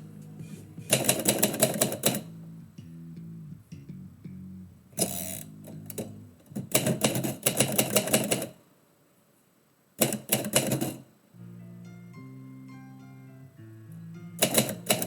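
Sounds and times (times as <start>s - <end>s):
background music: 0.0s - 7.2s, 11.4s - 15.0s
typewriter keys striking: 0.9s - 2.3s, 6.0s - 8.6s, 10.0s - 11.0s, 14.4s - 15.0s.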